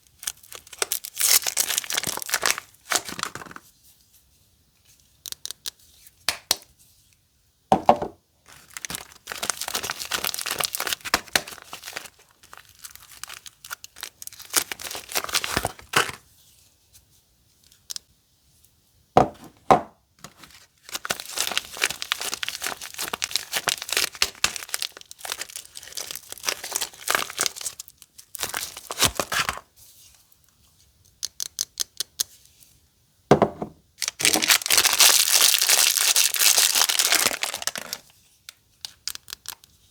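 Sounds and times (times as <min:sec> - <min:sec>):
wrappers crinkling and tearing: 0:00.0 - 0:03.6, 0:08.5 - 0:16.2, 0:20.4 - 0:29.6, 0:34.0 - 0:39.7.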